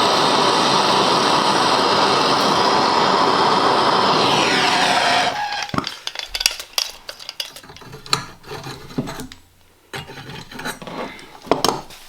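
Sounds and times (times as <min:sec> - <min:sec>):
small metal pieces clinking: 0:05.6 - 0:08.2.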